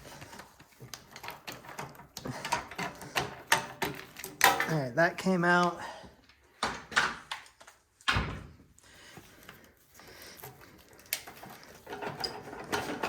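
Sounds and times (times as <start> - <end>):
parts knocking and clunking: 0.0 - 4.9, 6.4 - 8.6, 11.2 - 13.0.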